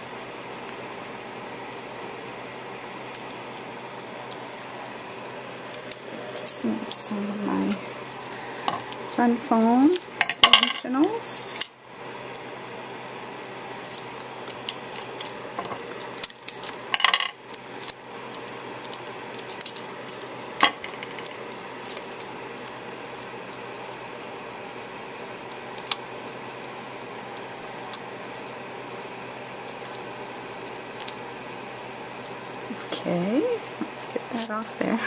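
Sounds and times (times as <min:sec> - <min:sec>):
faint steady hum: 0:00.0 - 0:35.0
paper crinkle: 0:13.7 - 0:24.0.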